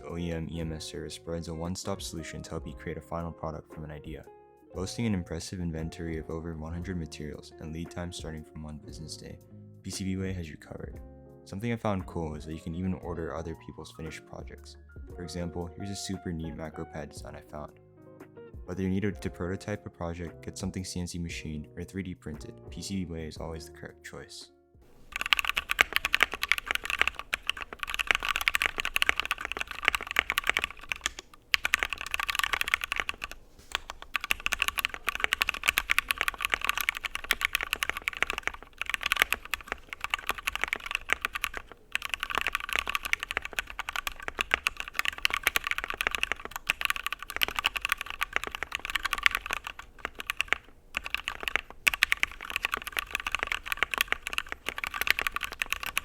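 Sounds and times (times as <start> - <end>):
typing on mechanical keyboard: 24.9 - 56.0.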